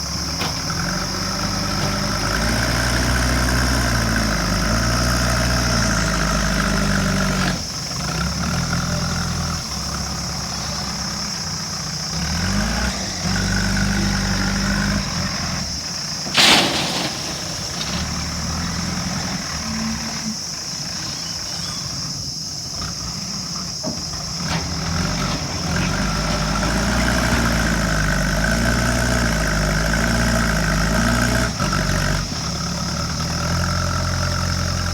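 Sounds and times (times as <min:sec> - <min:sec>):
backhoe diesel engine revving: 0:00.0 - 0:34.9
sharp bang: 0:16.3 - 0:19.2.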